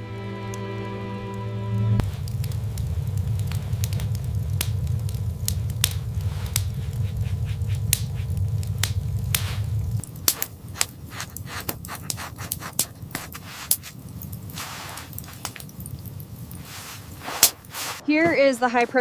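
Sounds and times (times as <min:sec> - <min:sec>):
low rumble: 0:01.7 - 0:10.1
wood fire crackling and popping: 0:01.9 - 0:19.0.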